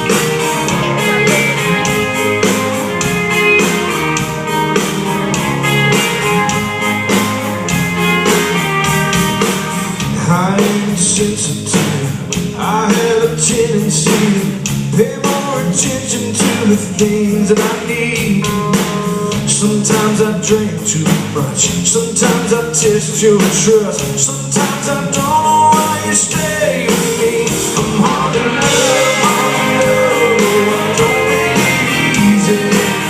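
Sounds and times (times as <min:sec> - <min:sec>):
live band playing country music: 0:00.0 - 0:33.0
man singing: 0:10.0 - 0:33.0.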